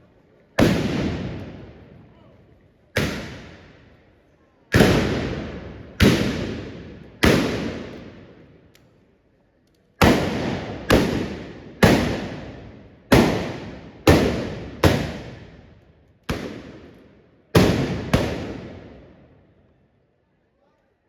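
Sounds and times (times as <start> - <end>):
blunderbuss blasts echoing: 0.6 - 2.0, 3.0 - 3.9, 4.7 - 8.5, 10.0 - 15.7, 17.6 - 19.2.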